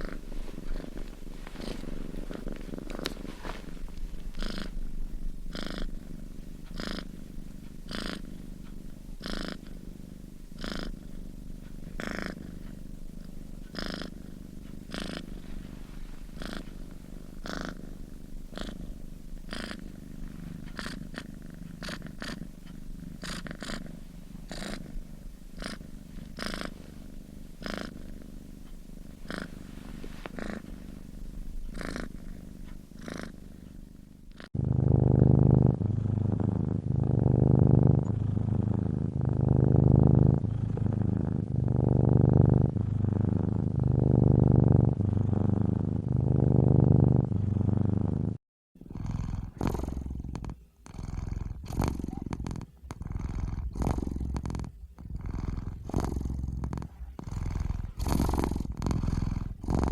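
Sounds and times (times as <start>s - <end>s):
low steady rumble: 0.0s - 23.2s, 23.8s - 48.0s
cat snoring: 0.0s - 59.9s.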